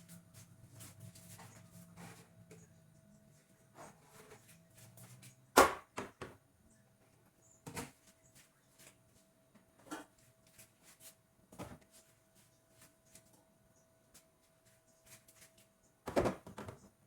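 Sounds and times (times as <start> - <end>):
items knocking in a fridge: 16.0 - 16.8.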